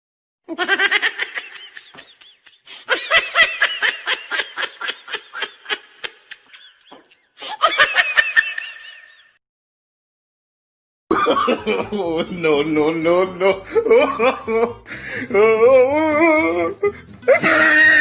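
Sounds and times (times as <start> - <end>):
high-pitched rapid laughter: 0.5 - 9.3, 17.3 - 18.0.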